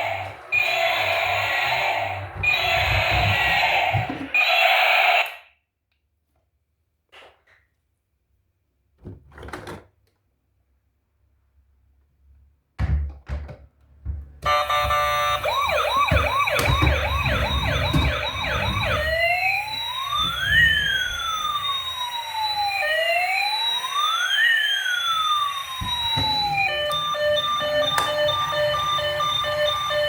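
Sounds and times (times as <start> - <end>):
toy electronic siren: 0.0 - 5.5, 14.5 - 30.0.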